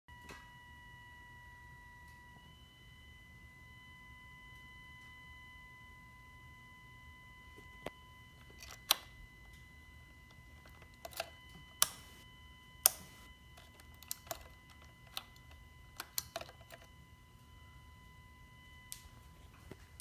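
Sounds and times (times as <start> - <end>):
sharp clicks and ticks: 10.6 - 12.2.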